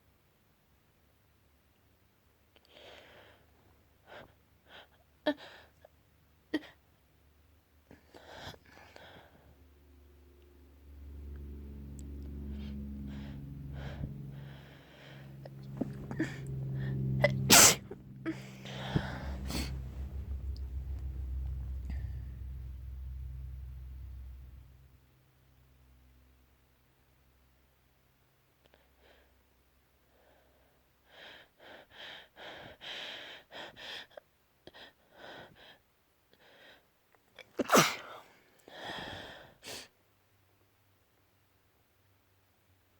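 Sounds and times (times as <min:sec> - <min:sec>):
person gasping breaths: 0:12.4 - 0:20.8, 0:38.2 - 0:39.8
person sneezing: 0:17.2 - 0:19.9, 0:37.5 - 0:38.2.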